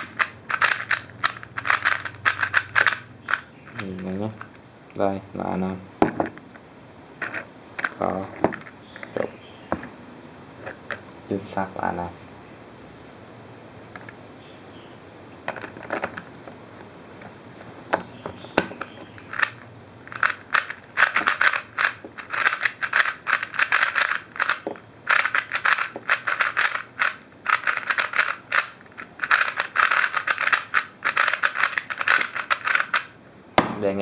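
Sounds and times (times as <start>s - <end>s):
puzzle cube clicking as turned: 0.0s - 4.6s, 18.8s - 33.1s.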